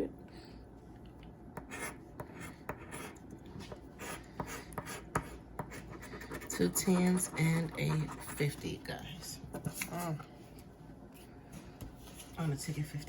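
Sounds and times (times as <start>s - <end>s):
scratch card rasping: 4.0s - 8.7s.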